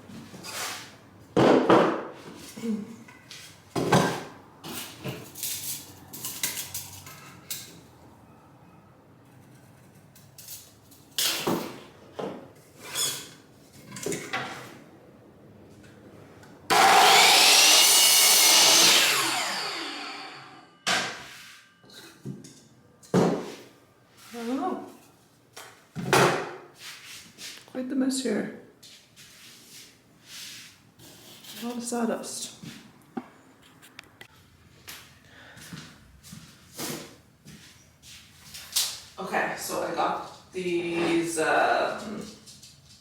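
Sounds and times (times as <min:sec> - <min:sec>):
power saw cutting: 0:16.7 - 0:20.8.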